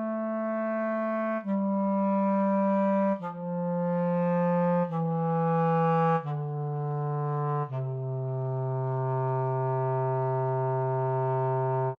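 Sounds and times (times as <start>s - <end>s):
low brass notes: 0.0s - 12.0s.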